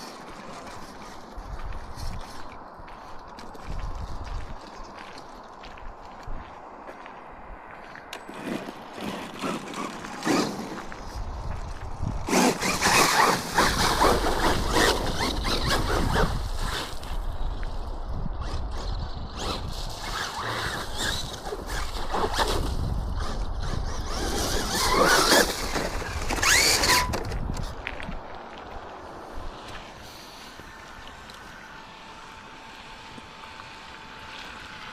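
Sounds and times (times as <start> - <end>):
tyres and chassis rumbling and rattling: 8.2 - 30.0.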